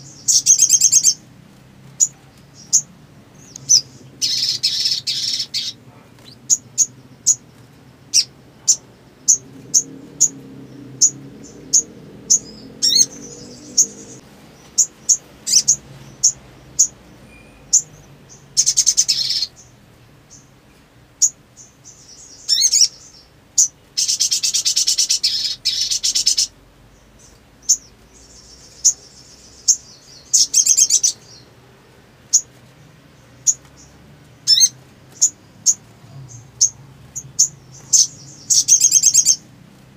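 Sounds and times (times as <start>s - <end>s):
bird calling with sharp chips: 2.0s - 10.4s, 11.8s - 20.5s, 21.2s - 26.5s, 33.4s - 39.4s.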